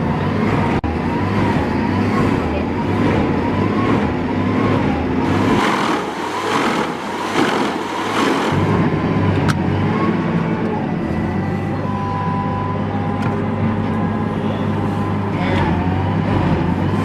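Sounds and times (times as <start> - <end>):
heavy machine engine running: 0.0 - 17.0
harsh grinding into wood: 5.2 - 8.9.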